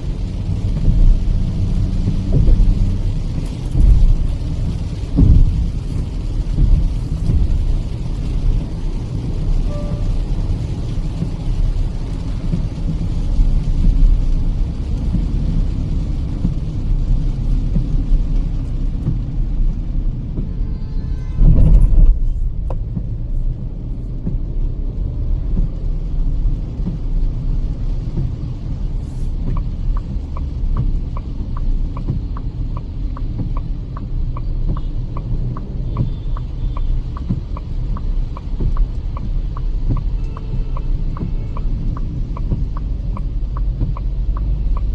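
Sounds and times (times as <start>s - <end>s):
light regular ticking: 0.0s - 20.6s, 22.3s - 44.9s
engine and tyre rumble in car: 0.0s - 44.9s
heavy thump: 21.4s - 23.1s.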